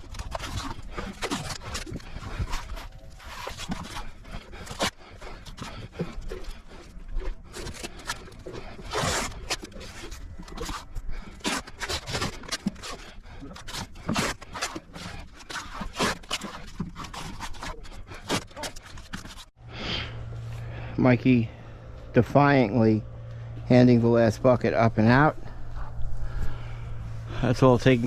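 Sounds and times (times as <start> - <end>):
sharp scrapes and clicks: 0.0 - 19.5.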